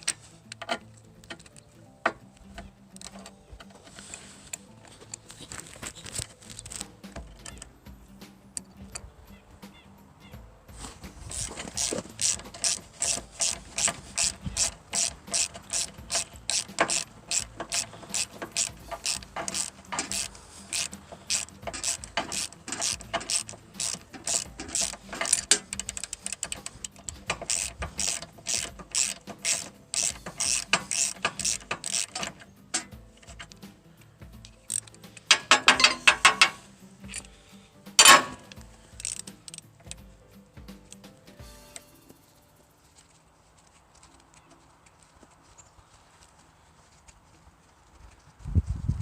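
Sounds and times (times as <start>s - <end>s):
ratchet wrench clicking: 0.0s - 1.7s, 2.4s - 7.7s, 11.2s - 33.7s, 34.3s - 37.4s, 38.0s - 40.1s.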